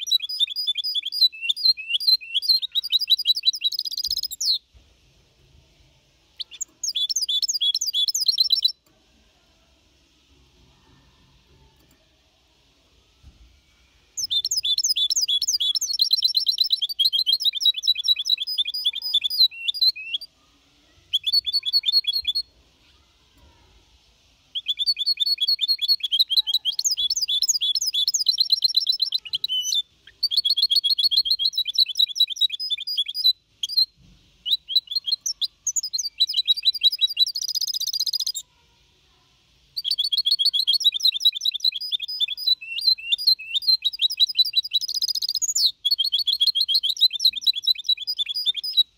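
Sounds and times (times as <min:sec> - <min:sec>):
finch singing trilled song: 0:00.0 - 0:04.6, 0:06.4 - 0:08.8, 0:14.2 - 0:20.3, 0:21.1 - 0:22.5, 0:24.5 - 0:38.4, 0:39.8 - 0:48.9.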